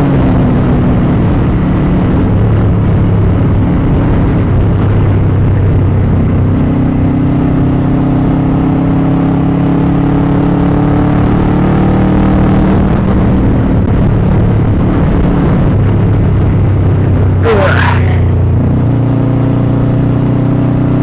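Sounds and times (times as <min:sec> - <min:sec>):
motorcycle engine running: 0:00.0 - 0:09.1.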